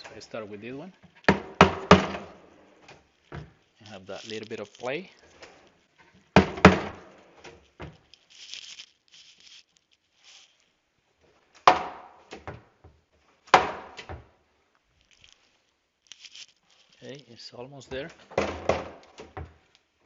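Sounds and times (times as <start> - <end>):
light clicks and rubbing: 2.7 - 6.2, 7.0 - 10.8, 14.8 - 18.3
drawer knocking shut: 6.4 - 7.0, 18.3 - 19.6.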